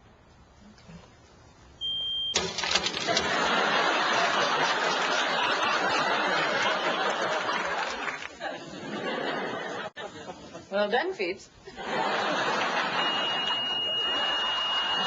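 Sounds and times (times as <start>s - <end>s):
smoke detector chirp: 1.8s - 2.4s, 12.6s - 15.0s
audience applause: 2.7s - 8.4s, 12.4s - 15.0s
audience laughter: 3.0s - 10.7s, 11.6s - 15.0s.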